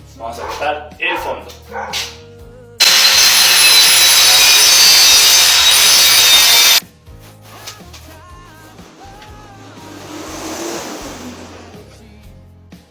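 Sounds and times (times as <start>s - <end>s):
power saw cutting wood: 2.8s - 6.8s, 9.0s - 12.0s.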